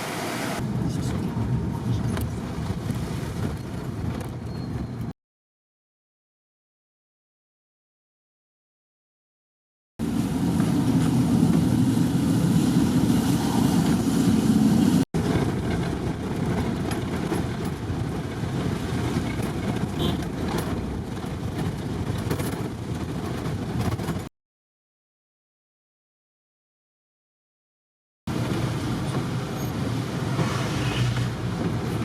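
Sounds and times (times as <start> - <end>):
minibus engine and road noise: 0.0 - 5.2, 10.0 - 24.3, 28.3 - 32.0.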